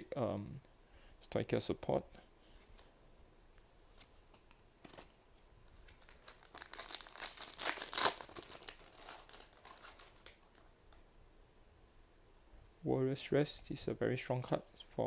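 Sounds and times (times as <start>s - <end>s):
foil wrapper tearing and crinkling: 5.9s - 10.8s.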